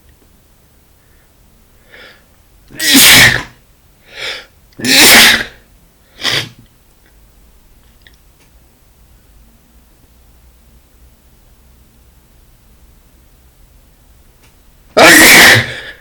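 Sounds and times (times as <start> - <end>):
man sneezing: 2.8 - 3.5, 4.8 - 5.6, 6.2 - 6.6, 15.0 - 16.0.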